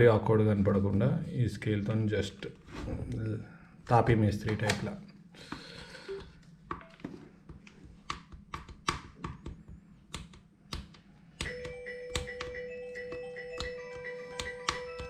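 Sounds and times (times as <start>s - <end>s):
background music: 11.4s - 15.0s.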